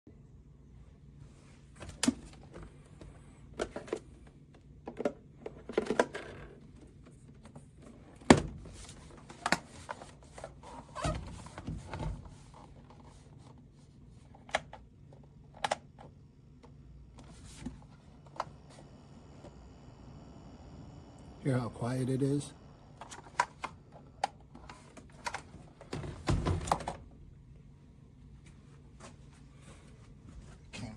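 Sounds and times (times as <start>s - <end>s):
fridge humming: 16.6s - 27.4s
plastic fridge clicks and knocks: 25.9s - 27.0s.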